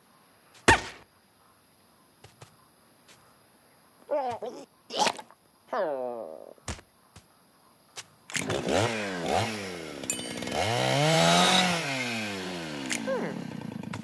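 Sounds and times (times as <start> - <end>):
cartoon character calls: 4.1 - 6.6, 13.0 - 13.4.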